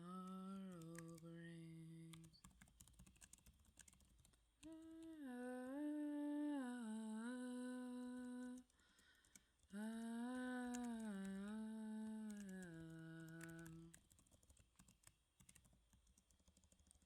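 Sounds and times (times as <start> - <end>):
woman humming a gentle melody: 0.0 - 2.5, 4.6 - 8.7, 9.7 - 14.0
faint keyboard typing clicks: 0.1 - 5.2, 8.1 - 17.0.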